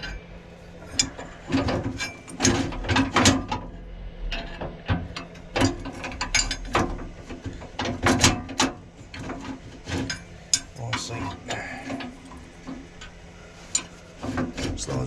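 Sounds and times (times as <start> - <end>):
metal parts clanking and scraping: 0.0 - 15.0.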